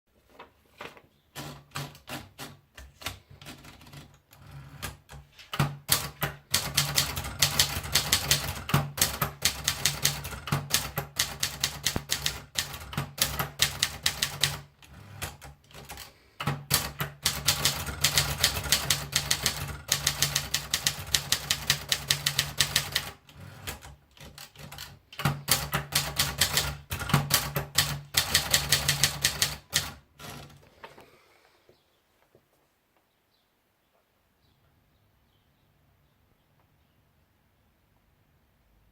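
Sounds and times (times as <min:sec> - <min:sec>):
typewriter key strikes: 0:05.6 - 0:30.5.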